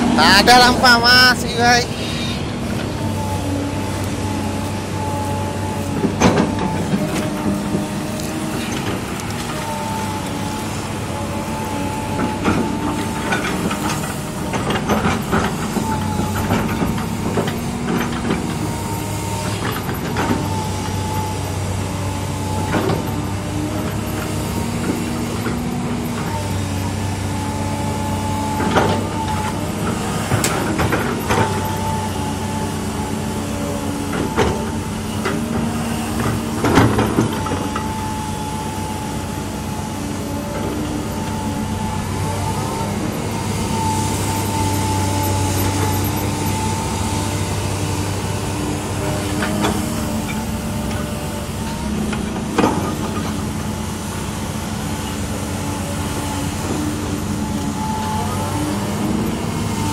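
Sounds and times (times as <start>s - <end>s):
wavering high whine: 0.0s - 5.4s
excavator diesel engine running: 0.0s - 59.9s.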